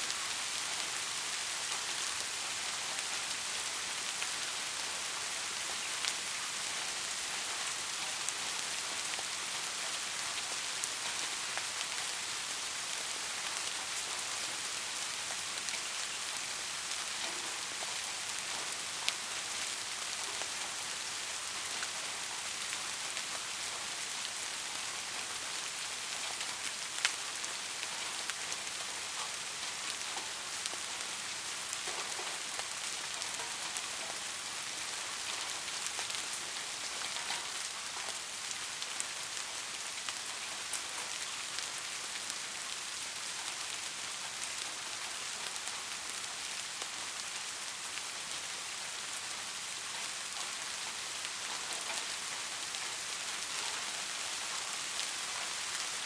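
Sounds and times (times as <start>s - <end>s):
raindrops dripping close by: 0.0s - 56.0s
steady rain hiss: 0.0s - 56.0s.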